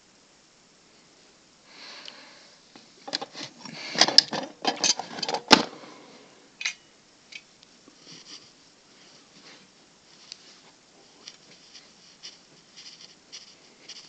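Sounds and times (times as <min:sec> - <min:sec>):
hard objects clicking and clattering: 0:03.1 - 0:05.7
rustle: 0:07.6 - 0:14.0.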